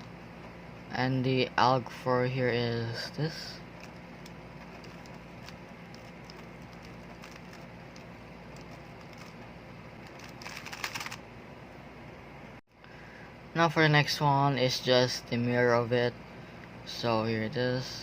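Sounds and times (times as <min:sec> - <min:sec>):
plastic cube layers clicking: 0:03.8 - 0:09.4, 0:10.1 - 0:11.2.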